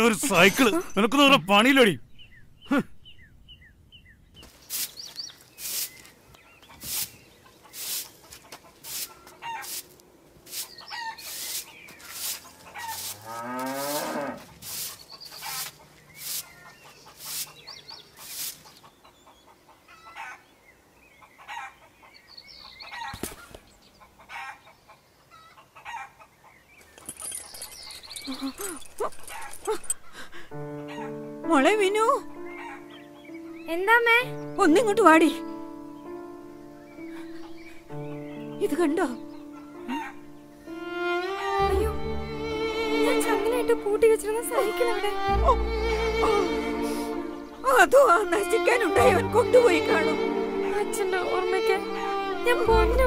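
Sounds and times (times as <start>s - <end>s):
chickens clucking: 6.5s - 13.7s, 14.8s - 20.4s, 39.2s - 40.2s.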